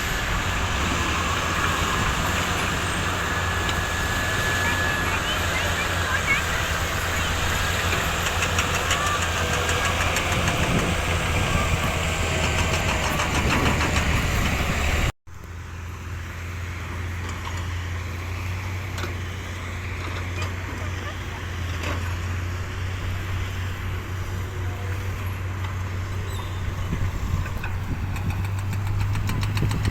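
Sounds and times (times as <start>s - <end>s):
heavy machinery diesel engine: 0.0s - 29.9s.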